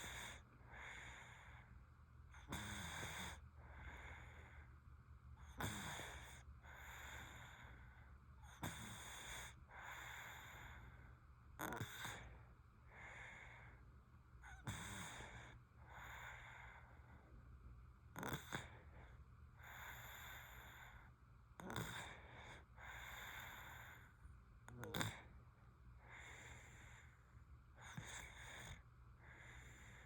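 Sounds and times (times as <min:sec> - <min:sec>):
baby snoring faintly: 0:00.0 - 0:01.7, 0:02.4 - 0:04.7, 0:05.4 - 0:13.8, 0:14.4 - 0:17.3, 0:18.1 - 0:25.4, 0:26.0 - 0:27.2, 0:27.8 - 0:30.0.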